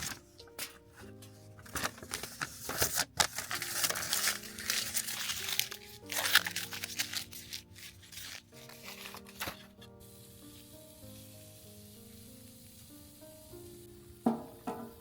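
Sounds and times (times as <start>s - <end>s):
crinkling and rustling: 0.0s - 9.8s
background music with held notes: 0.0s - 15.0s.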